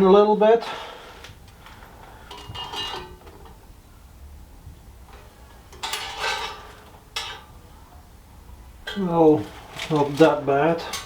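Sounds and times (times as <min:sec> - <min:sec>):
steel plates clanking: 0:02.2 - 0:03.6, 0:05.2 - 0:07.6, 0:08.8 - 0:11.0.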